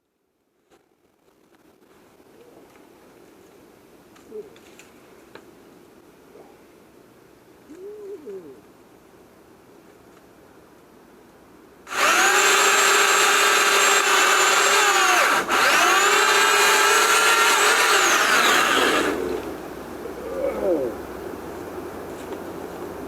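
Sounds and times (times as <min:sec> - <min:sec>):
pole chainsaw motor whining: 0:11.9 - 0:19.5.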